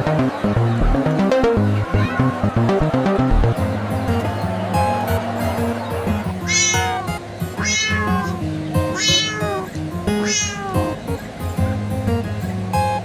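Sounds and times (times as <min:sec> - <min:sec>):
background music: 0:00.2 - 0:10.2
cat meowing: 0:02.0 - 0:02.3, 0:06.4 - 0:11.0.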